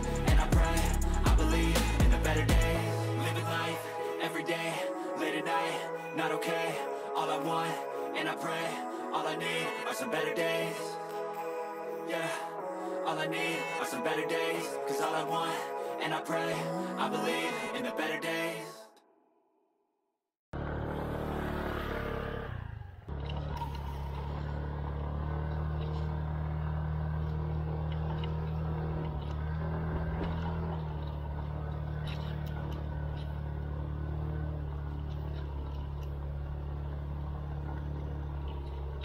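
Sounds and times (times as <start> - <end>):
scooter engine running: 0.0 - 3.6, 20.6 - 39.0.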